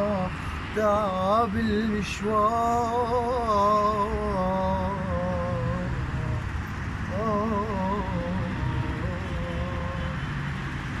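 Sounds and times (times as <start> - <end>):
person humming a melody: 7.2 - 10.3.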